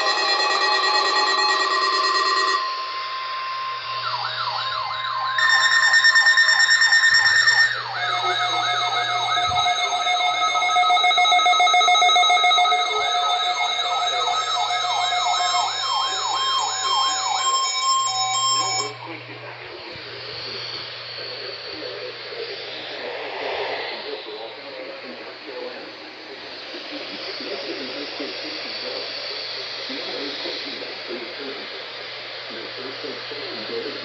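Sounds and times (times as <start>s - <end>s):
steady alert tone: 0.0s - 19.0s
steady beeping tones: 0.0s - 24.5s
warbling siren-like tones: 0.0s - 26.5s.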